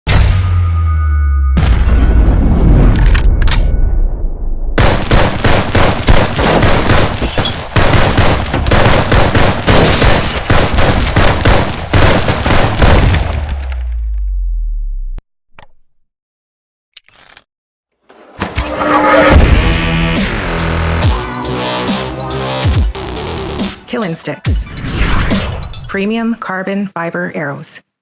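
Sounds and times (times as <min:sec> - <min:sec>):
deep rumble of a blast: 0:01.6 - 0:04.9
machine gun automatic fire: 0:04.8 - 0:13.5.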